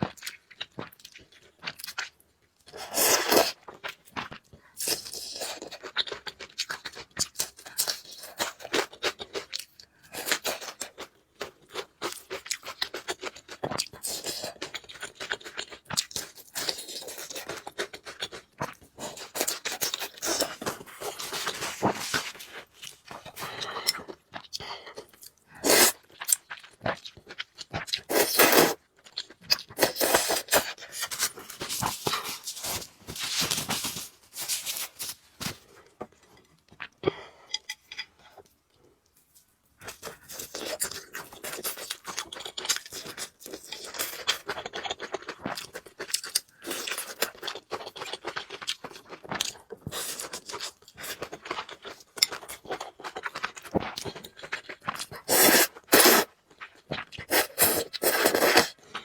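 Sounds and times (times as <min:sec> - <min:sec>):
person chewing noodles: 0:00.0 - 0:39.0, 0:39.8 - 0:59.0.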